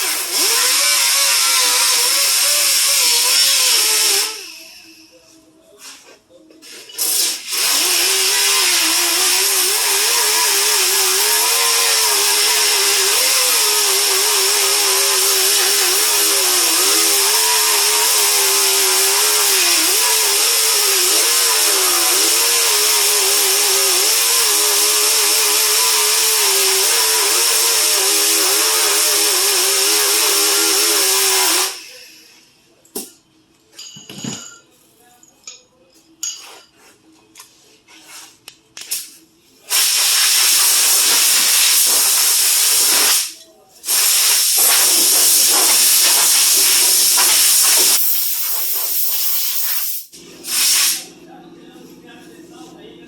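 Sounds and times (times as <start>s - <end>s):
power tool whining: 0.0s - 4.8s, 7.0s - 32.0s, 43.9s - 49.2s.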